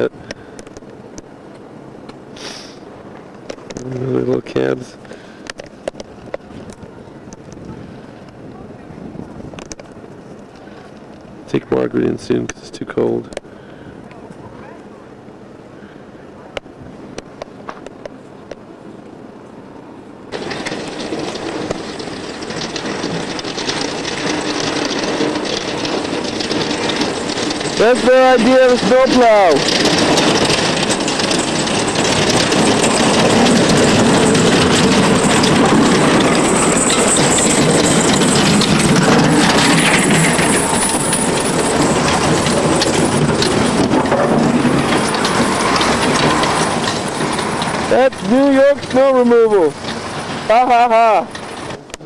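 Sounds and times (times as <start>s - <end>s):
snowplow truck engine: 20.2s - 52.0s
plow blade scraping the road: 20.3s - 52.0s.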